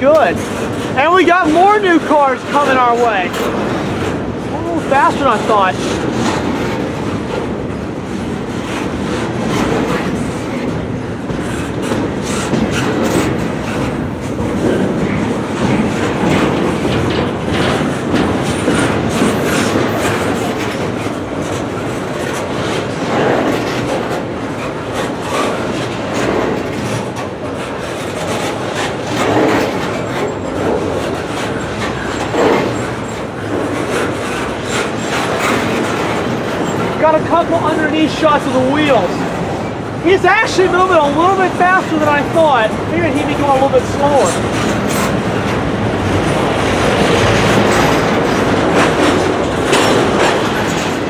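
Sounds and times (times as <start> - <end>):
freight train wheels rumbling: 0.0 - 51.0
wheels clicking over rail joints: 11.4 - 39.6.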